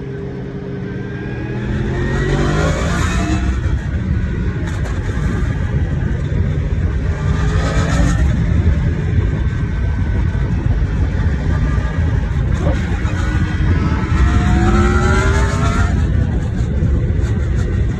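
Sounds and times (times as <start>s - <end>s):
motorcycle engine accelerating: 0.0s - 17.9s.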